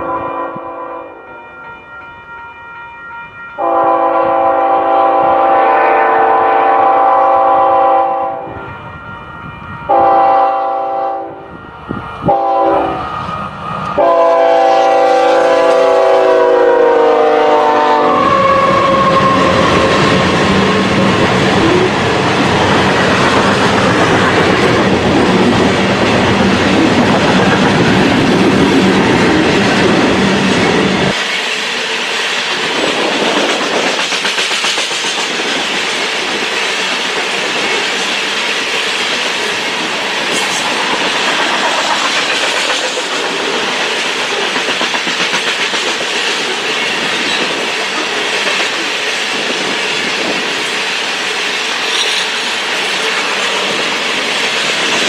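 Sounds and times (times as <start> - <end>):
locomotive air horn blasts: 0.0 - 13.1, 14.0 - 21.0
train rumbling past: 0.0 - 55.0.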